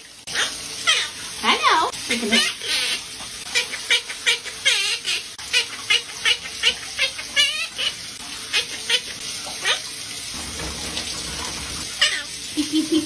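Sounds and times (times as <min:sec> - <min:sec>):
parrot warbling trill: 0:00.3 - 0:09.9, 0:12.0 - 0:12.4.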